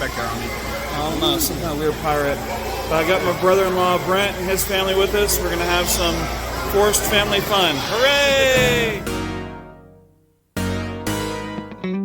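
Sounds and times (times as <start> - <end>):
plucked guitar music: 8.5 - 12.0.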